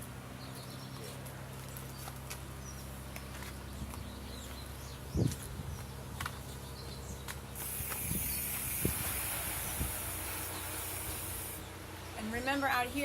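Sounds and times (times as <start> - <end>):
steady hiss: 7.6 - 11.8.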